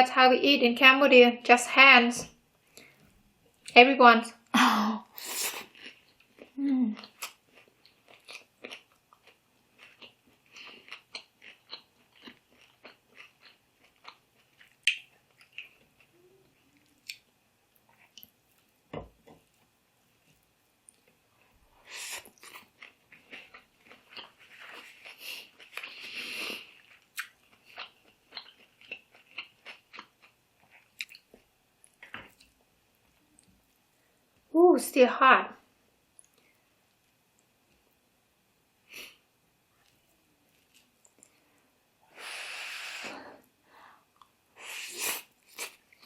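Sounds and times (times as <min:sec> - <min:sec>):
chewing and crunching food: 0:05.6 - 0:18.8, 0:19.4 - 0:33.8, 0:39.8 - 0:41.7
wet mouth clicks: 0:14.8 - 0:15.1.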